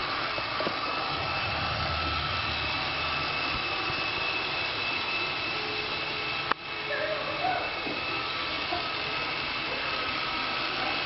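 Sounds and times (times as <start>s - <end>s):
robot vacuum motor whirring: 0.0s - 6.6s.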